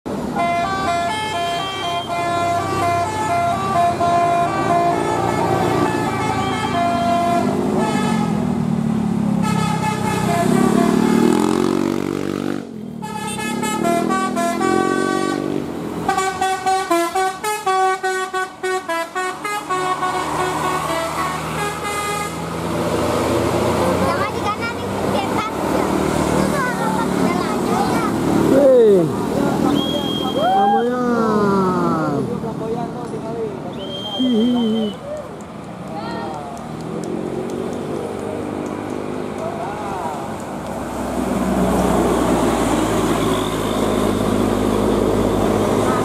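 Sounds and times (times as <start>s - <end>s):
bus engine running: 0.1s - 46.0s
musical bus horn tune: 0.3s - 8.5s, 9.4s - 11.4s, 13.0s - 22.5s.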